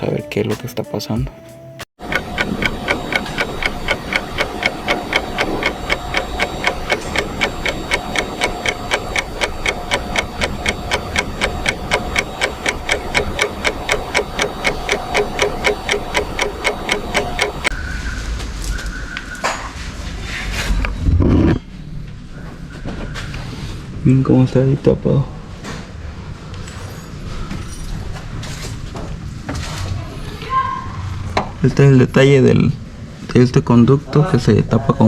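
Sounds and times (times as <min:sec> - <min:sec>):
throttle body clicking: 0:02.0 - 0:17.7.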